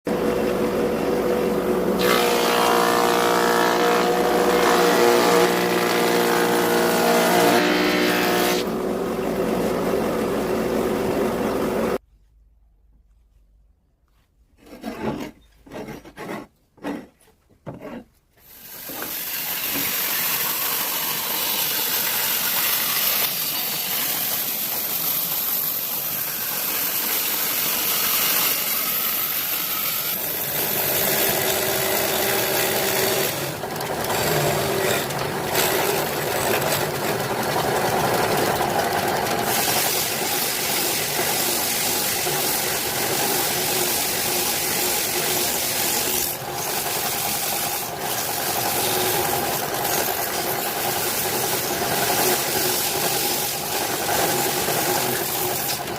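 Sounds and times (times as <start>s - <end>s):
tool rasping wood: 2.0s - 8.7s, 14.6s - 37.1s.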